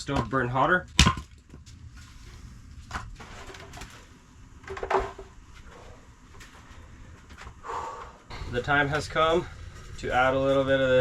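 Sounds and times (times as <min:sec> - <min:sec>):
firewood splitting knocks: 0:00.0 - 0:01.6
low steady rumble: 0:00.0 - 0:11.0.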